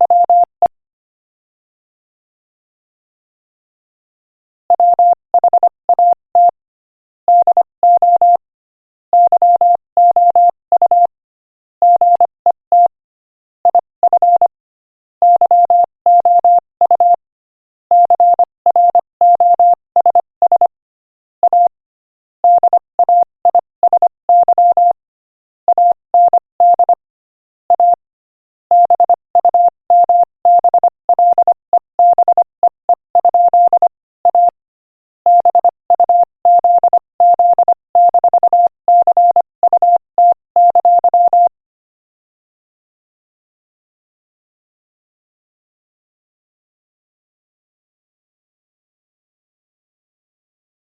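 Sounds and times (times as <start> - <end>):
morse code beeping: 28.7 - 34.6, 35.3 - 41.5.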